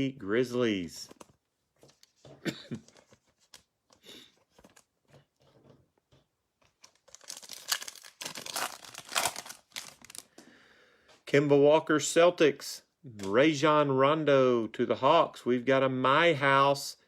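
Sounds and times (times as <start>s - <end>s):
wrapper crackling: 6.8s - 10.3s.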